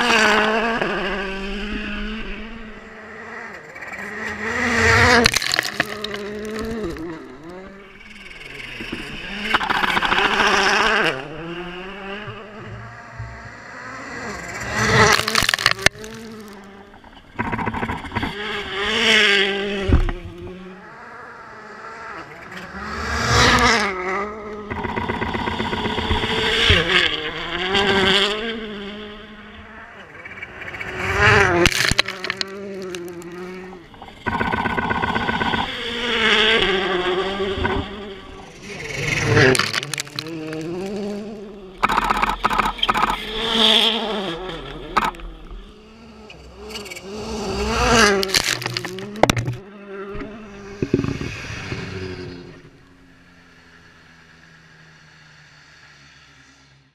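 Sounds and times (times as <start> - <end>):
rally car engine revving: 0.0 - 55.8
sharp engine cracks: 14.5 - 18.4, 47.9 - 49.6.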